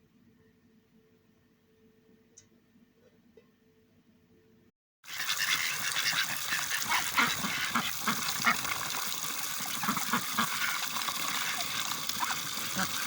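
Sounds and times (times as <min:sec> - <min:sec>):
ducks quacking: 0:05.1 - 0:13.0.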